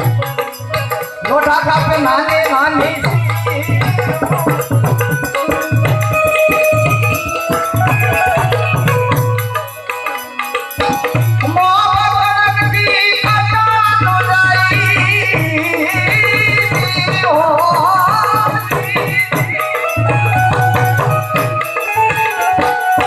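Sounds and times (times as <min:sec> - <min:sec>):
hand drum beat: 0:00.0 - 0:09.7, 0:10.8 - 0:23.0
held melody notes: 0:00.0 - 0:12.8, 0:18.5 - 0:23.0.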